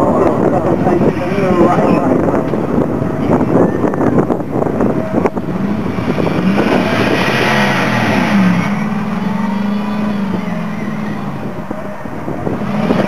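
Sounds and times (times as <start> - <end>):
engine at full throttle: 5.2 - 13.0.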